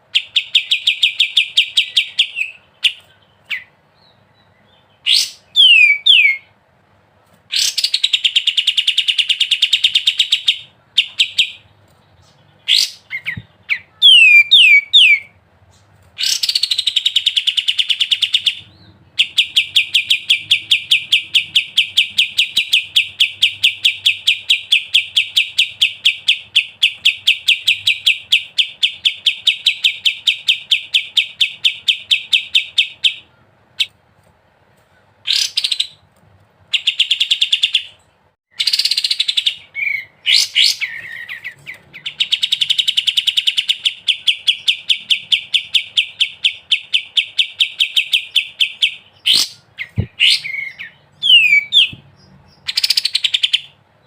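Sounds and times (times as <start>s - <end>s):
bird whistled notes: 12.7s - 15.4s, 47.8s - 52.0s.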